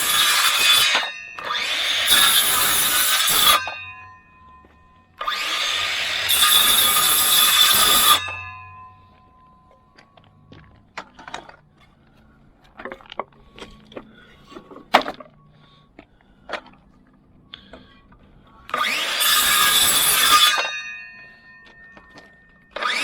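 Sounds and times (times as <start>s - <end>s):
loud sawing through wood: 0.0s - 4.1s, 5.2s - 8.6s, 18.7s - 21.5s, 22.7s - 23.0s
wooden boards knocking and clattering: 14.5s - 15.4s.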